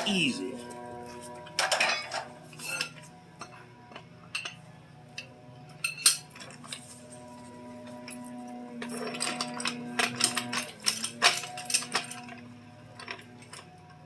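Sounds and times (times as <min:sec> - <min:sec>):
metal tools clinking: 0:01.6 - 0:03.5, 0:08.8 - 0:12.4.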